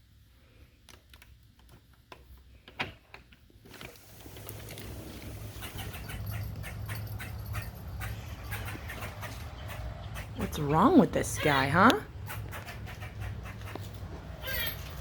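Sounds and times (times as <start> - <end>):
squirrel clicking chatter: 5.6 - 13.9.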